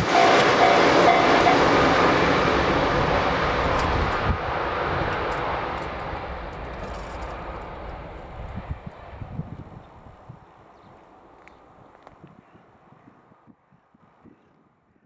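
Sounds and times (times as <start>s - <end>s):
wheels clacking over rail: 0.0s - 10.0s
electric train rolling: 0.0s - 10.3s.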